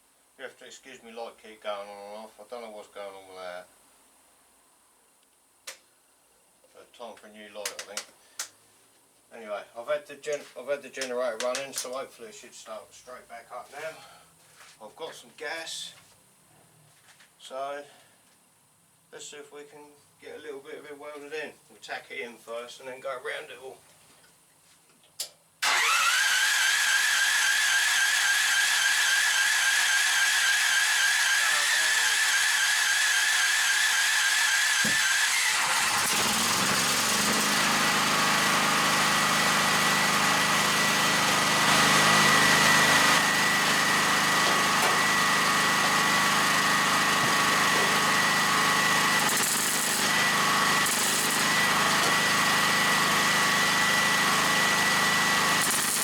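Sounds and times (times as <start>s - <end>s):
generator engine running: 35.0s - 56.0s.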